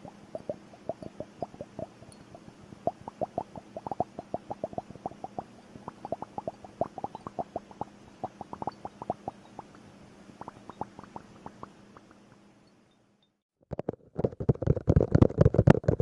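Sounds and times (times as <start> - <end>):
bubbles plopping and gurgling: 0.0 - 12.2.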